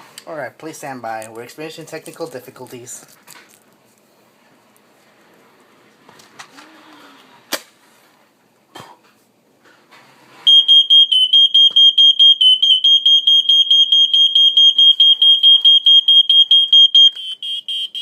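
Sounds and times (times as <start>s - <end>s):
smoke alarm beeping: 10.5s - 18.0s.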